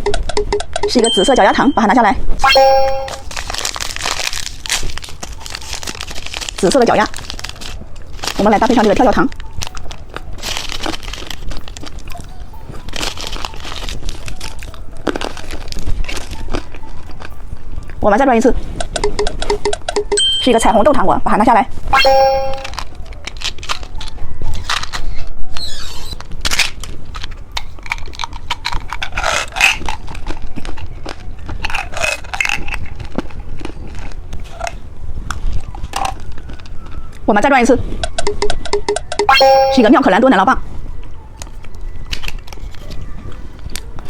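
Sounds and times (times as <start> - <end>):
hard candy crunching: 2.7 - 20.2, 22.7 - 25.2, 26.0 - 37.3, 41.4 - 44.0
wrapper crinkling: 3.1 - 18.0, 22.7 - 25.2, 26.0 - 37.2.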